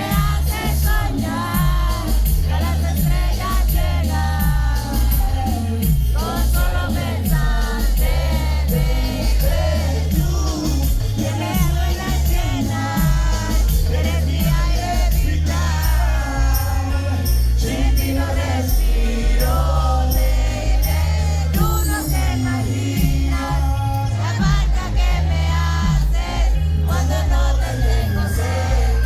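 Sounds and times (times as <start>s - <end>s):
heavy rhythmic bass beat: 0.0s - 29.0s.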